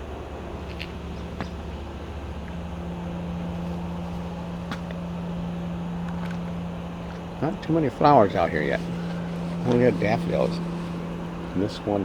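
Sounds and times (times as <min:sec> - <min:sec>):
engine hum: 0:00.0 - 0:12.0
low drone: 0:00.0 - 0:12.0.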